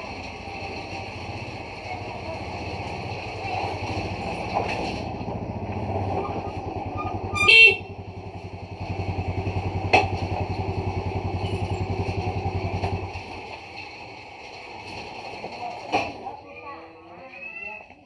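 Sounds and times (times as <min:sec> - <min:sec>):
motorcycle engine idling: 0:00.0 - 0:14.3
motorcycle horn honk: 0:07.2 - 0:08.1.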